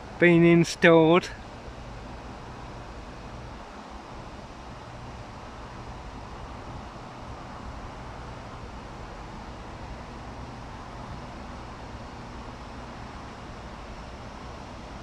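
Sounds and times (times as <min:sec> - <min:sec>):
constant hiss: 0:00.0 - 0:15.0
faint hum: 0:00.0 - 0:15.0.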